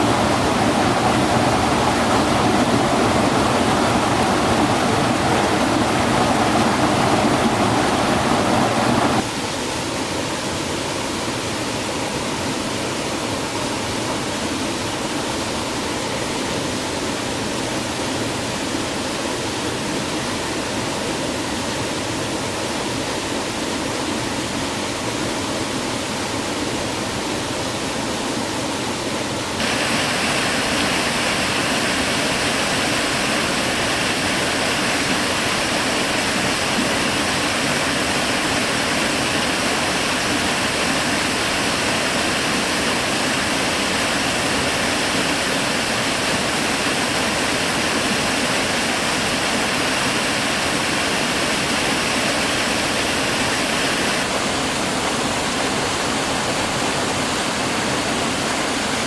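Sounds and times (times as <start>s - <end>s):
water rushing: 0.0s - 59.0s.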